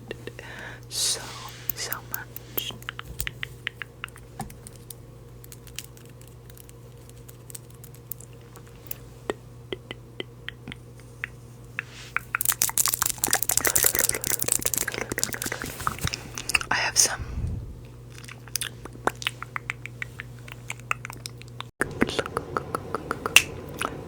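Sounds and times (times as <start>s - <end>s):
steady low hum: 0.0s - 24.0s
crackling clicks: 1.7s - 9.0s.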